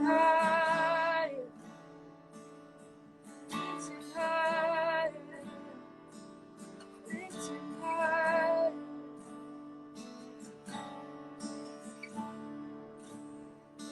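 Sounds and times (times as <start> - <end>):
woman singing with vibrato: 0.0 - 1.5, 3.6 - 5.8, 7.1 - 9.0
strummed acoustic guitar: 0.0 - 13.9.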